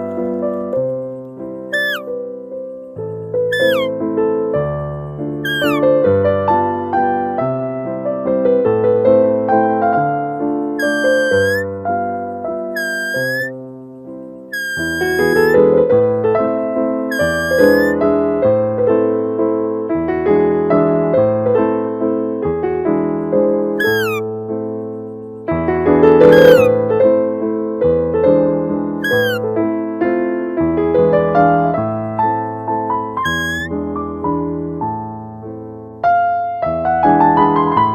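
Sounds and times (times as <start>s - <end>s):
background piano music: 0.0s - 37.9s
cat meowing: 1.7s - 2.1s, 3.5s - 3.9s, 5.4s - 5.8s, 10.8s - 11.7s, 12.8s - 13.5s, 14.5s - 15.6s, 17.1s - 18.0s, 23.8s - 24.2s, 26.2s - 26.7s, 29.0s - 29.4s, 33.2s - 33.7s
high call: 1.7s - 2.1s, 3.5s - 3.9s, 5.4s - 5.8s, 10.8s - 11.7s, 12.8s - 13.5s, 14.6s - 15.6s, 17.1s - 18.0s, 23.8s - 24.2s, 26.2s - 26.8s, 29.0s - 29.4s, 33.2s - 33.7s.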